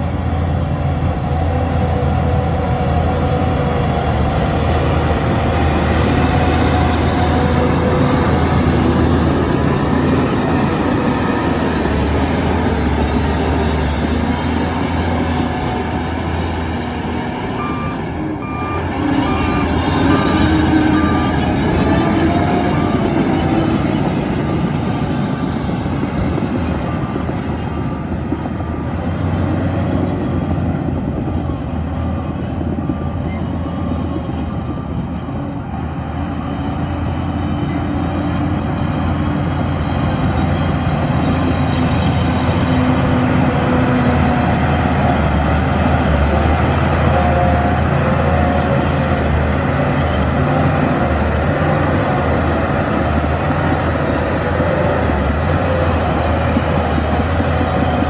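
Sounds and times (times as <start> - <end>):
bulldozer diesel engine: 0.0 - 58.0
reversing alarm beeping: 5.2 - 28.1.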